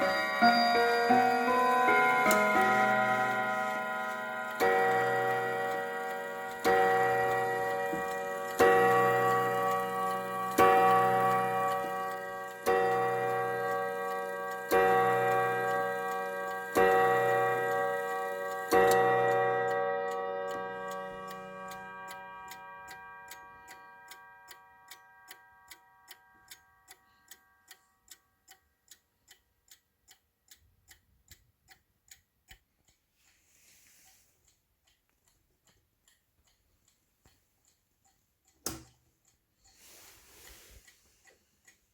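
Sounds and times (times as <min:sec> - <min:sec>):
clock chime strikes: 0:00.0 - 0:26.1
clock ticking: 0:00.0 - 0:41.9.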